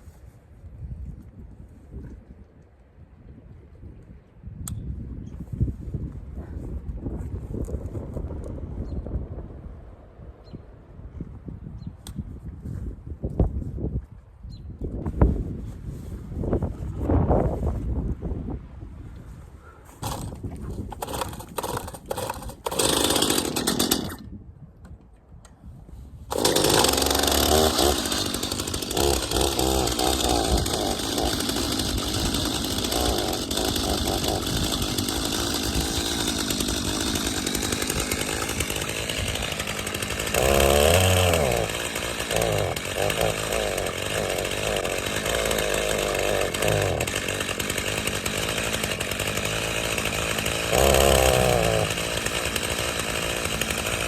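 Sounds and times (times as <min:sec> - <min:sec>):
chainsaw clicks: 0:20.0 - 0:24.2, 0:26.3 - 0:54.0
chainsaw revving and cutting: 0:20.0 - 0:24.2, 0:26.3 - 0:54.0.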